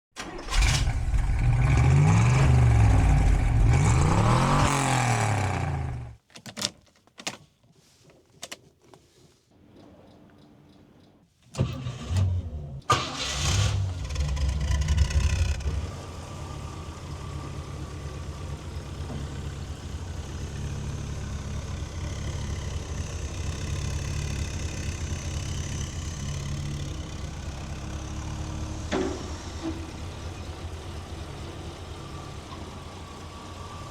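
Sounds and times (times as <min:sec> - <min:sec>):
car engine revving and idling: 0:00.5 - 0:06.2, 0:11.6 - 0:33.9
clicks: 0:06.2 - 0:12.3.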